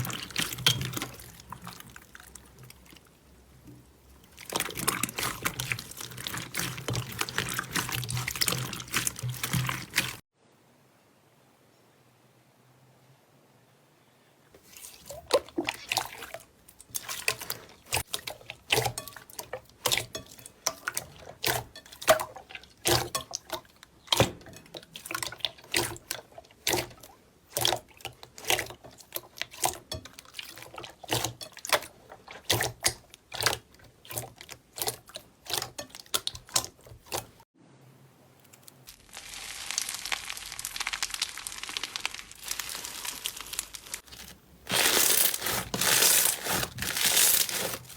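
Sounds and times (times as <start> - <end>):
crackling hiss: 38.9 - 44.1
slime squished by hand: 38.9 - 47.9.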